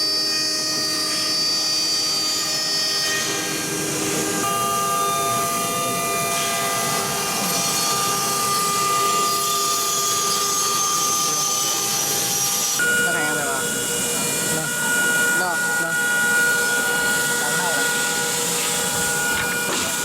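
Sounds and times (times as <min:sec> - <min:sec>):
router spindle whine: 0:00.0 - 0:20.0
cutting noise: 0:09.8 - 0:20.0.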